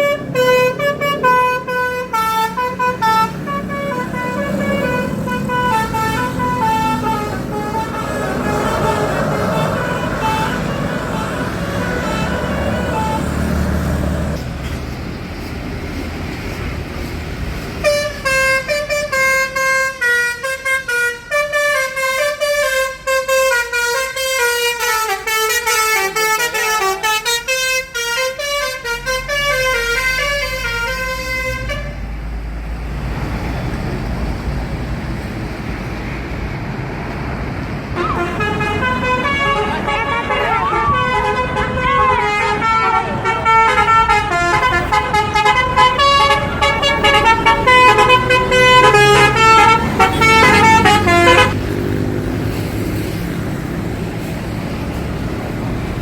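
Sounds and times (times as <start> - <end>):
musical bus horn melody: 0.0 - 14.4, 17.8 - 32.0, 38.0 - 51.7
bus engine: 0.0 - 56.0
traffic noise: 0.0 - 56.0.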